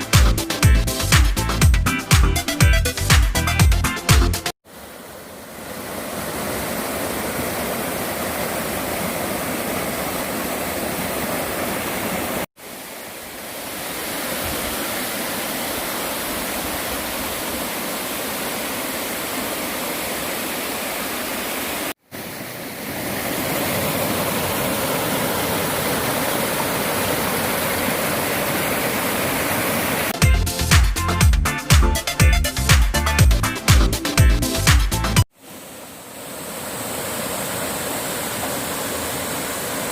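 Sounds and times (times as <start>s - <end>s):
stream water rushing: 4.6s - 30.2s, 35.3s - 39.9s.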